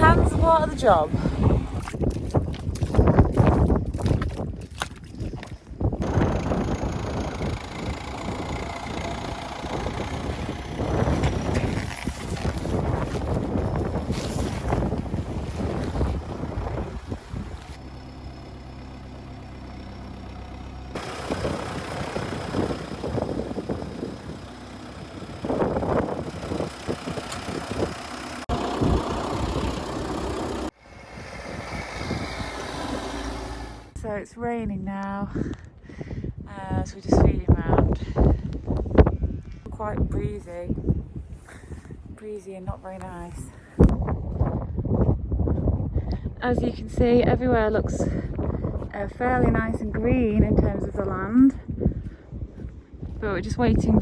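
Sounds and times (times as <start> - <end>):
wind buffeting microphone: 0.0 - 17.9, 20.9 - 54.0
vehicle engine running: 5.8 - 34.0, 42.8 - 54.0.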